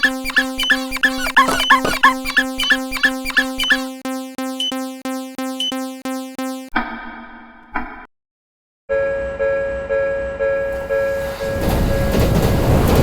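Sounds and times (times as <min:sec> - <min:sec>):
buzzy sound: 0:00.0 - 0:06.7
electronic bell-like alarm tone: 0:00.0 - 0:06.7
playful sliding tones: 0:00.0 - 0:06.7.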